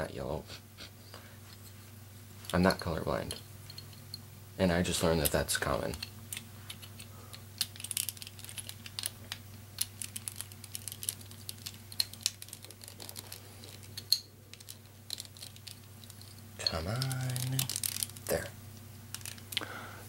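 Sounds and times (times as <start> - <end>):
plastic puzzle pieces clicking: 6.3 - 16.3.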